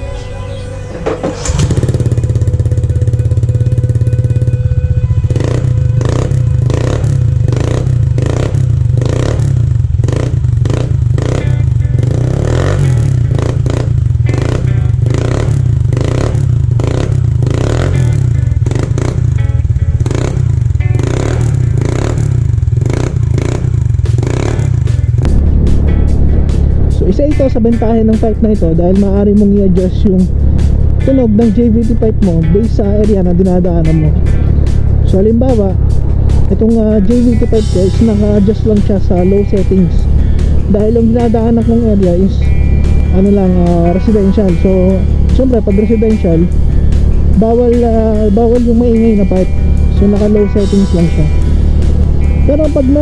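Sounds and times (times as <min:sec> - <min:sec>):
scooter engine droning: 0:00.0 - 0:53.0
background music with beat: 0:24.0 - 0:53.0.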